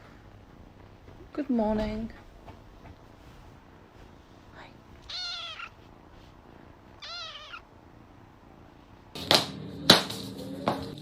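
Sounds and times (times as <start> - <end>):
cat meowing: 5.0 - 5.8, 7.0 - 7.7.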